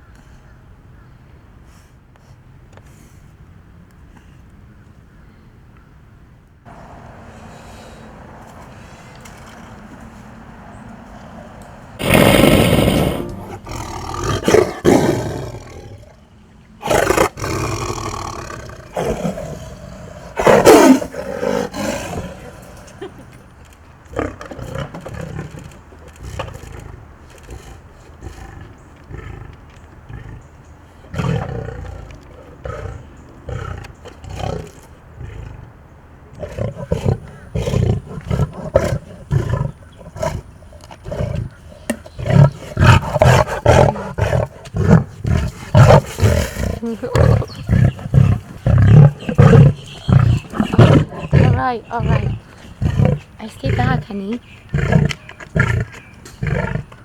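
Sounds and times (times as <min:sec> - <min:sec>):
big cat grunts: 0:12.0 - 0:16.2, 0:16.8 - 0:23.3, 0:24.1 - 0:57.0
big cat roaring and snarling: 0:12.0 - 0:16.2, 0:16.8 - 0:23.1, 0:24.1 - 0:54.0, 0:54.7 - 0:57.0.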